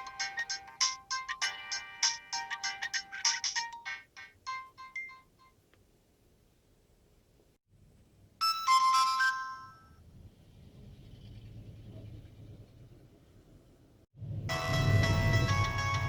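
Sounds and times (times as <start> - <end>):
chiming ringtone: 0.0 - 5.5, 8.4 - 10.0, 14.5 - 16.0
polyphonic phone ringtone: 0.0 - 5.5, 8.4 - 10.0, 14.5 - 16.0
faint low rumble: 10.1 - 16.0.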